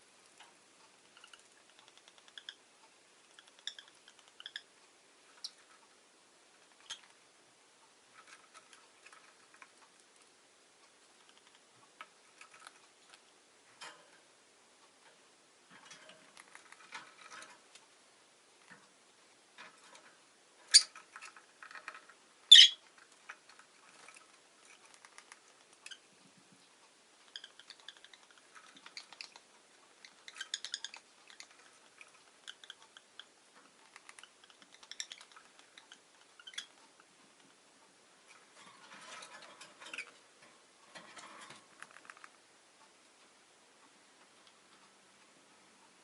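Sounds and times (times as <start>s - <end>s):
birds scratching and clicking: 0.2s - 2.6s, 3.2s - 14.3s, 14.9s - 18.0s, 18.6s - 37.6s, 38.2s - 42.5s.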